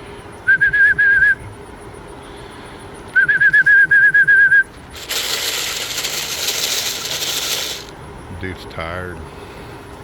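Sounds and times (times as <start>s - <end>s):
person whistling trilled call: 0.4s - 1.5s, 3.1s - 4.7s.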